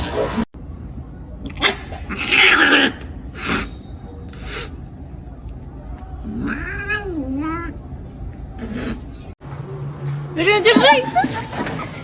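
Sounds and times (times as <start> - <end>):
cat meowing: 6.3 - 7.8.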